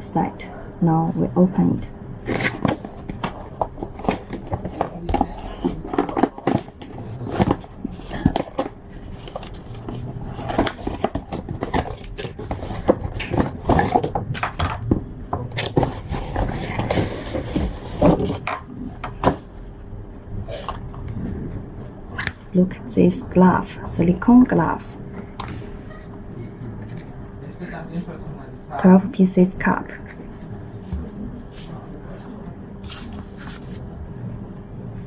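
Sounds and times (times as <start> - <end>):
cardboard box being unpacked: 2.3 - 14.2, 15.6 - 18.5.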